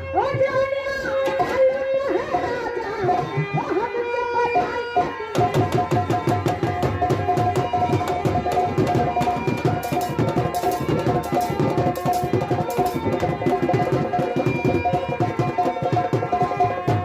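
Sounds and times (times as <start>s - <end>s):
fast hand-drum strokes: 5.3s - 17.0s.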